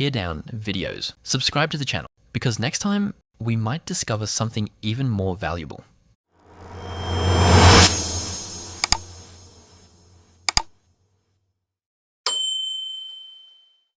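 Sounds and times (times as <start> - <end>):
whoosh: 6.4 - 9.8
bell ding: 12.3 - 13.9.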